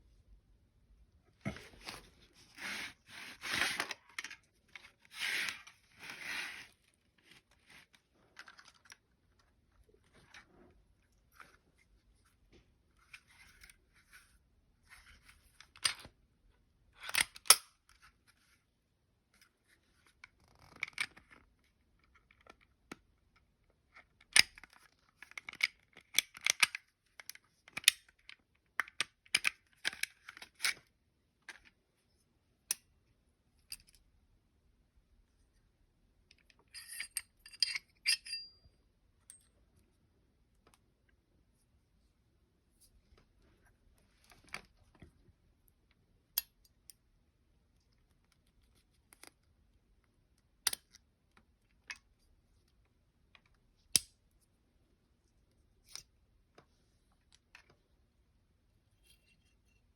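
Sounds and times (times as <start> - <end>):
pistol parts clicking and sliding: 36.3 - 38.6.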